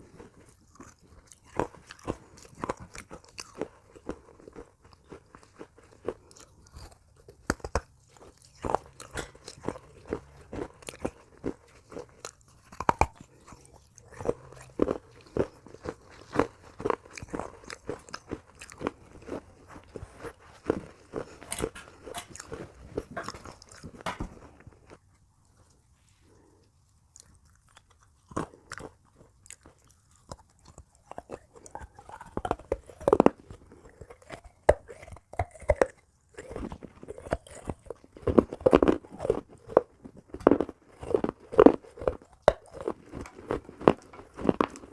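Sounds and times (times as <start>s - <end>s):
clay pieces crunched by chewing: 0.0s - 44.9s.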